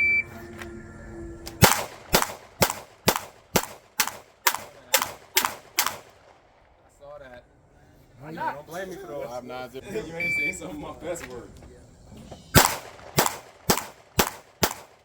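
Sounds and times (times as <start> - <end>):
pistol shots: 1.6 - 6.8, 12.6 - 15.0.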